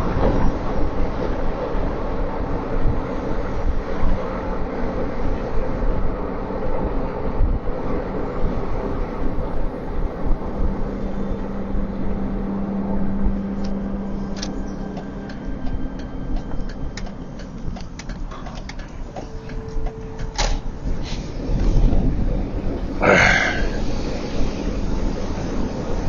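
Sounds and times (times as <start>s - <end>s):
car road and engine rumble: 0.0s - 26.0s
low steady hum: 7.4s - 24.1s.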